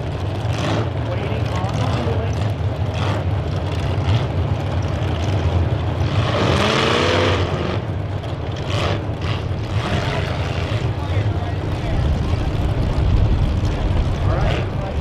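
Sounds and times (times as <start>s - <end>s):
car engines running loudly: 0.0s - 15.0s
engine revving up: 0.5s - 2.3s, 6.0s - 7.9s, 8.6s - 15.0s.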